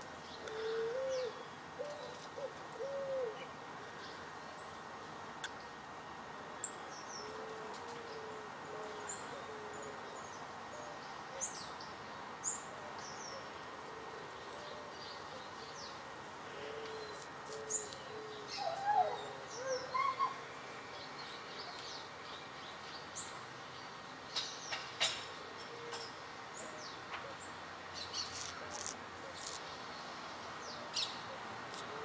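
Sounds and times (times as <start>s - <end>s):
outdoor background noise: 0.0s - 32.0s
birds high chirps: 16.8s - 20.4s, 25.9s - 31.9s.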